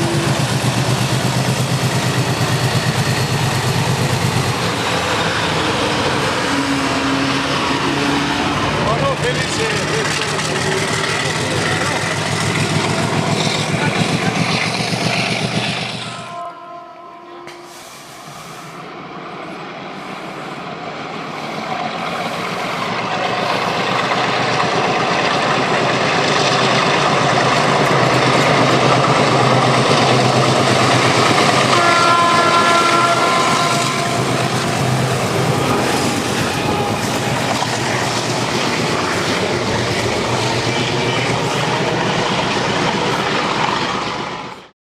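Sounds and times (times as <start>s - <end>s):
diesel locomotive engine chugging: 0.0s - 16.4s, 17.0s - 44.7s
locomotive horn blast: 5.7s - 8.9s, 15.9s - 18.2s, 31.6s - 37.5s.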